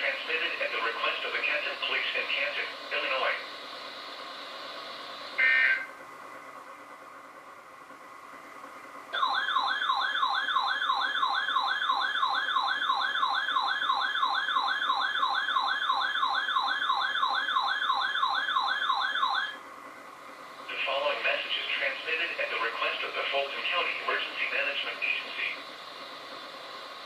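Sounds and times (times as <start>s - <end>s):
electronic siren yelping: 5.4s - 5.9s, 9.2s - 19.6s.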